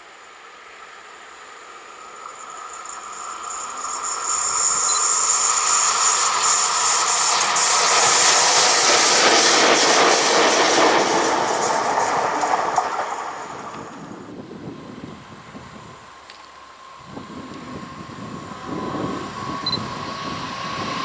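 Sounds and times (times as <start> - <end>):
train wheels clattering: 2.6 - 14.3.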